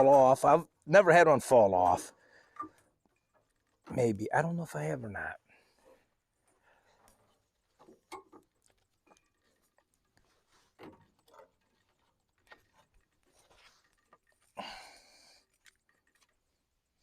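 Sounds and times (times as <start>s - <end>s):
clicks and knocks of metal parts: 7.1s - 14.6s.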